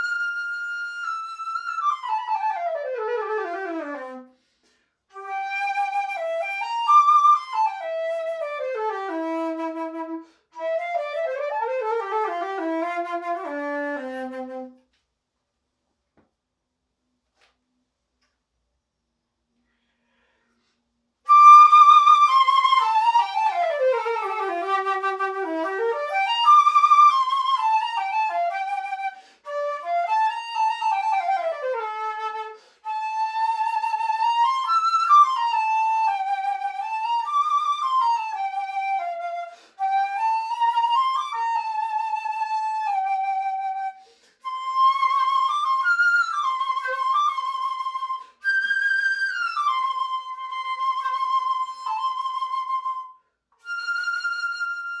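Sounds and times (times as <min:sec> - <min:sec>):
solo flute melody: 0:00.0 - 0:15.0, 0:21.2 - 0:55.0.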